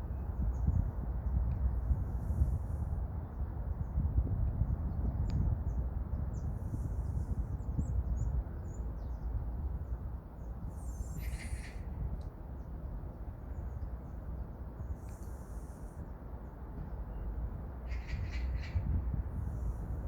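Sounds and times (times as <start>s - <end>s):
birds calling: 10.8s - 11.9s.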